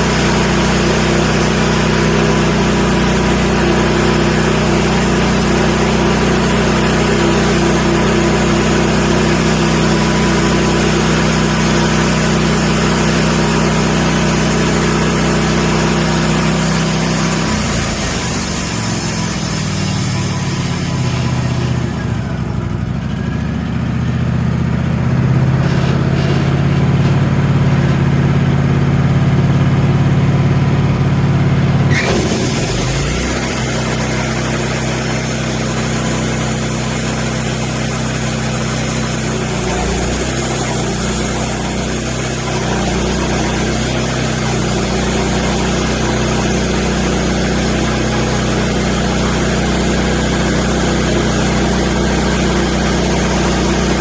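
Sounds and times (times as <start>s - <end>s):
sawmill engine running: 0.0s - 54.0s
loud hiss: 13.3s - 22.1s, 31.9s - 54.0s.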